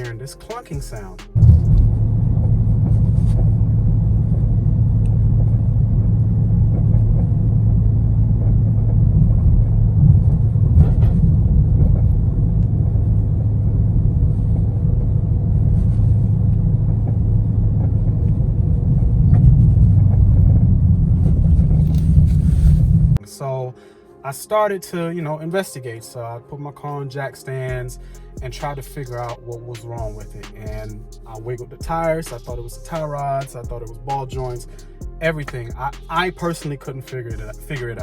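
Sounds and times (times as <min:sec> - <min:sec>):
car engine and road noise: 0:00.0 - 0:23.2.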